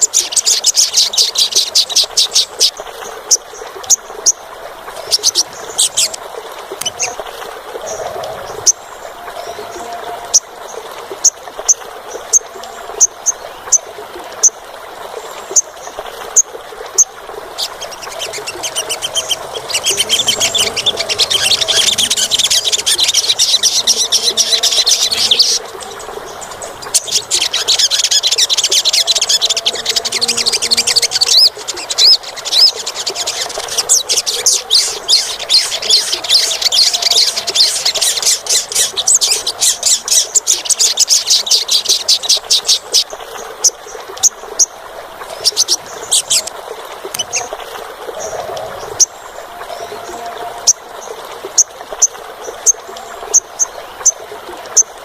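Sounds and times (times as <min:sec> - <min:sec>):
bird trilling song: 0:16.4 - 0:44.7.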